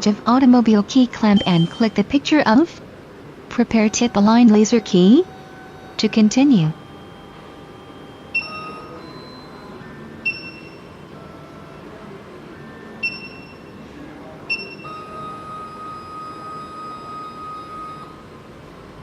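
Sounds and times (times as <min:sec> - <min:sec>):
touchscreen beeping: 0:01.1 - 0:02.2, 0:03.5 - 0:11.0, 0:13.0 - 0:13.7
steady single tone: 0:01.2 - 0:02.0, 0:03.6 - 0:11.6.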